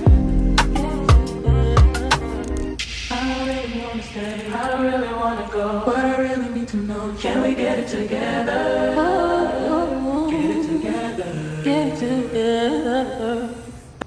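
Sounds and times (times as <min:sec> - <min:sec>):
voices singing in harmony: 0:03.2 - 0:14.0.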